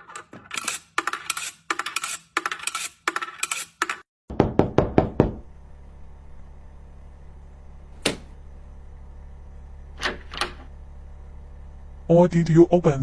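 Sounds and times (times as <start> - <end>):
steady low hum: 4.8 - 13.0.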